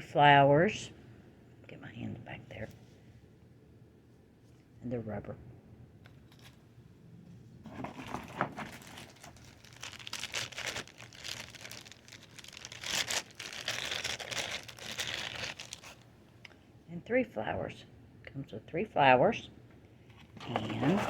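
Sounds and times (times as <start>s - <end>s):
packaging crinkling and rustling: 7.6s - 16.1s, 20.2s - 21.0s.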